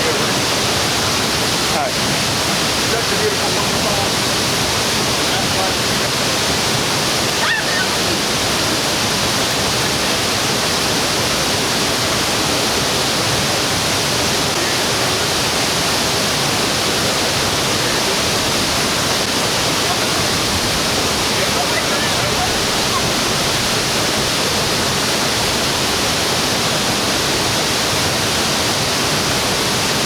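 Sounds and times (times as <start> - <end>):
waterfall pouring: 0.0 - 30.0.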